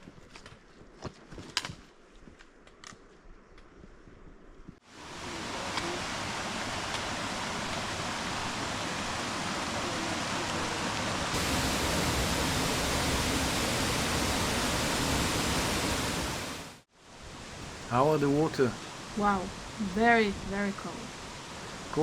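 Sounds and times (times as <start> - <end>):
mountain stream rushing: 4.9 - 22.0.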